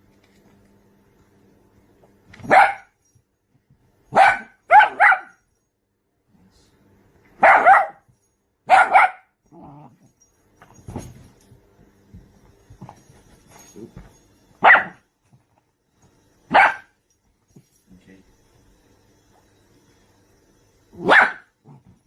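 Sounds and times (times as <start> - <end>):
dog barking: 2.4 - 2.9, 4.1 - 5.4, 7.4 - 8.1, 8.7 - 9.3, 14.6 - 15.0, 16.5 - 17.0, 21.0 - 21.5.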